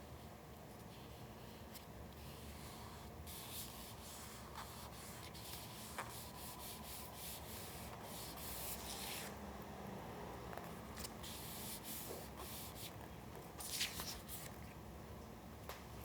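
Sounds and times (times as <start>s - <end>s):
paper rubbing and rustling: 1.0s - 9.3s, 13.6s - 14.7s.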